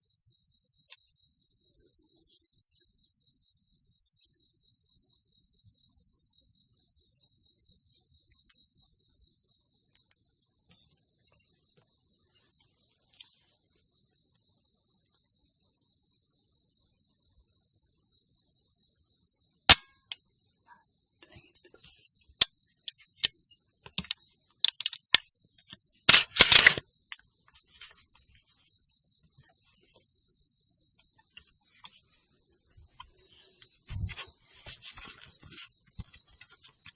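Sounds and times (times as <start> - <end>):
night insects chirring: 0.0 - 36.9
clicks and knocks: 26.1 - 26.8
rifle shot: 26.1 - 26.8.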